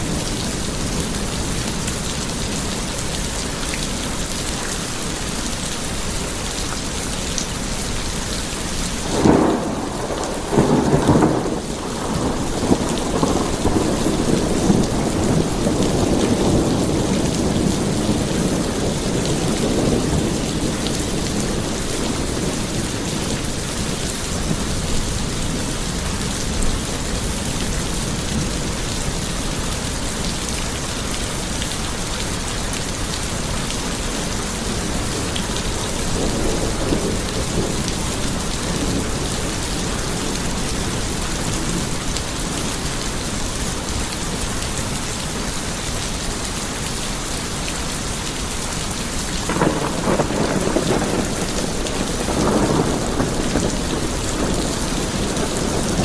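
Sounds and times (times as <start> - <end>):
steady rain on a surface: 0.0 - 56.0
rolling thunder: 9.0 - 26.8, 33.4 - 42.6, 49.4 - 56.0
sharp thunderclap: 9.1 - 22.7, 49.5 - 56.0.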